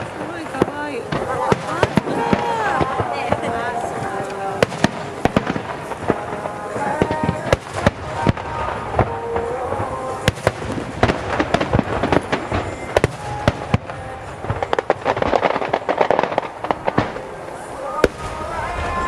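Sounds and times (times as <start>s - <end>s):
fireworks bangs: 0.0s - 19.0s
fireworks crackle: 0.0s - 19.0s.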